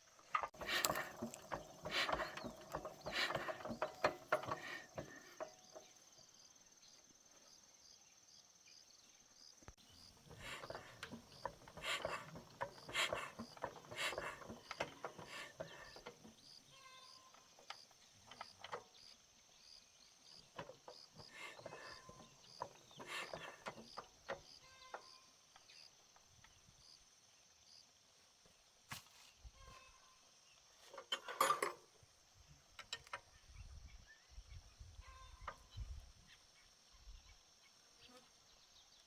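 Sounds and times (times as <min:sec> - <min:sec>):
hand tools clanking on metal: 0:00.3 - 0:06.0, 0:10.1 - 0:16.4, 0:20.6 - 0:25.0, 0:30.9 - 0:31.9.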